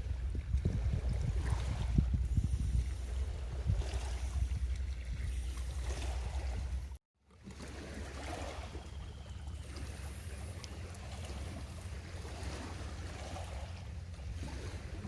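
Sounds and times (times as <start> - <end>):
wind buffeting microphone: 0.0 - 7.0
sea surf hiss: 2.3 - 6.9, 9.6 - 12.8.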